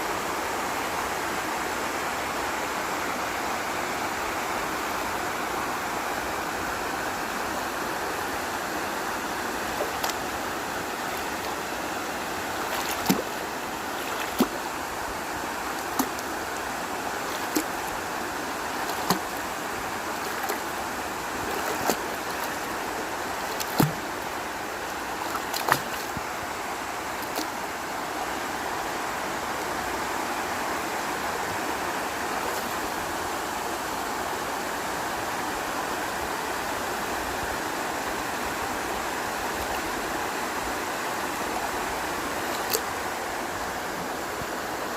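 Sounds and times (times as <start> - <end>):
waterfall rushing: 0.0 - 34.8.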